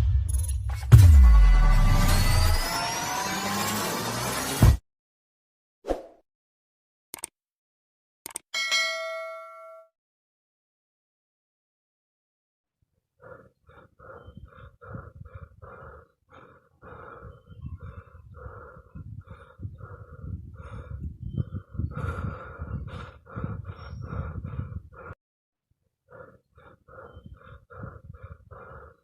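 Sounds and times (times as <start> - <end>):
rapid rhythmic panting: 13.2 - 25.2, 26.1 - 29.0.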